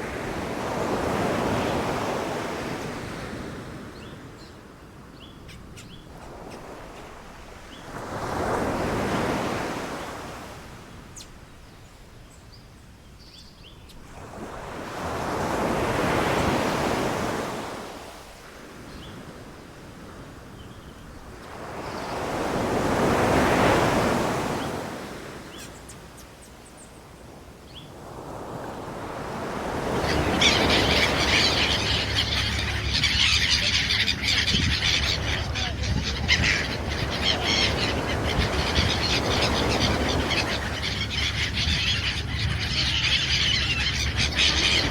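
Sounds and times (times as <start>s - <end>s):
ocean waves breaking: 0.0s - 4.3s, 6.1s - 11.1s, 14.0s - 26.0s, 27.2s - 44.9s
faint bird chirps: 29.8s - 44.9s.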